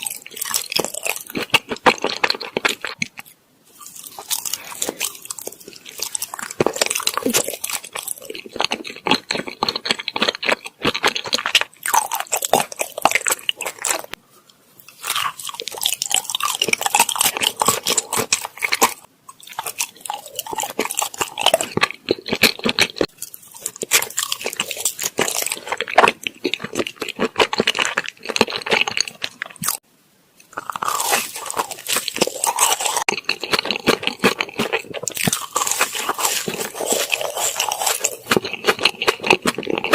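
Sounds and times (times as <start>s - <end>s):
wet chewing mouth clicks: 30.4s - 39.9s.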